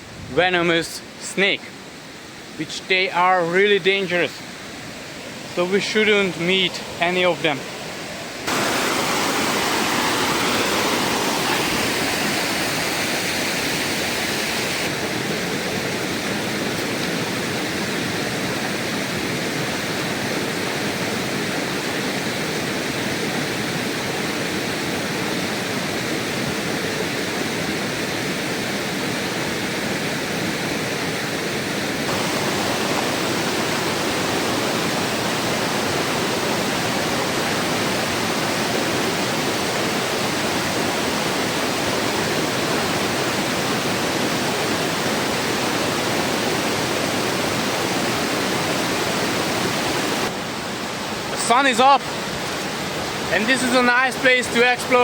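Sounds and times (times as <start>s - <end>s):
river rushing over stones: 0.5s - 55.0s.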